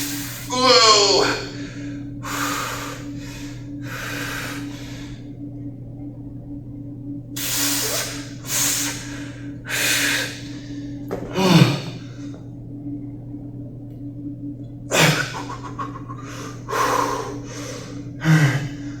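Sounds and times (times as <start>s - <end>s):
person breathing hard: 0.0s - 5.3s, 7.4s - 12.4s, 14.9s - 19.0s
steady low hum: 0.0s - 19.0s.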